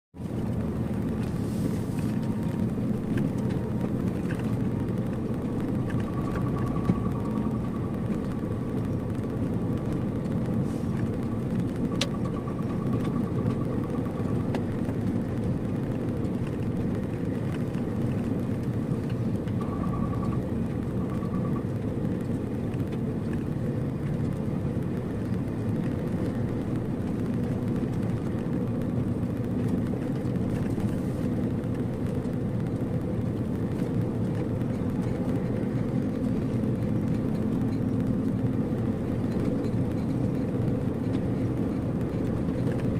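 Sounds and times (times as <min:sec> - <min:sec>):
vehicle driving rumble: 0:00.2 - 0:42.9
faint pulsing high tone: 0:19.6 - 0:21.7.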